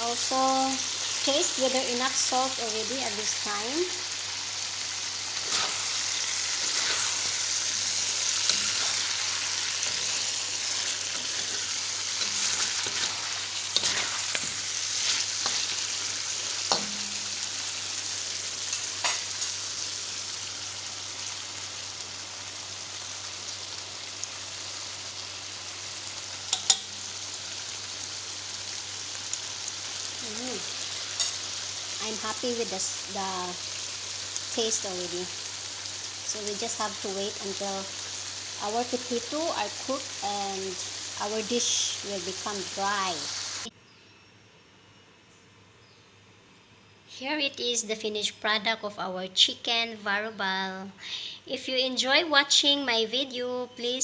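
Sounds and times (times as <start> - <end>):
curry sizzling in a frying pan: 0.0 - 43.7
spoon scraping a pan: 5.4 - 17.3, 26.5 - 27.0, 31.0 - 31.5.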